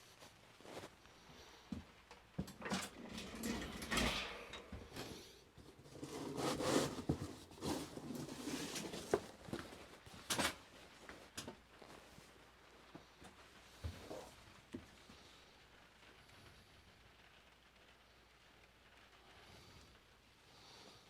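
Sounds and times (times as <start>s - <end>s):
rustling: 0.0s - 16.8s.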